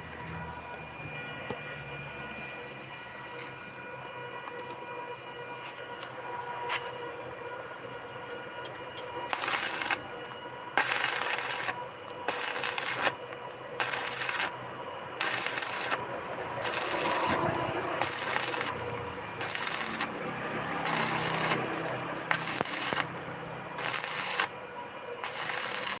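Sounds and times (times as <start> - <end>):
arc welding crackling bursts: 9.3 - 10.0, 10.8 - 13.2, 13.8 - 14.6, 15.2 - 23.2, 23.8 - 24.6, 25.2 - 26.0.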